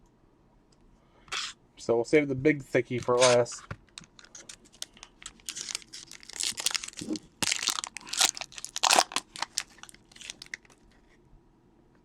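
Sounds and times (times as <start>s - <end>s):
foil wrapper crinkling: 4.0s - 11.0s.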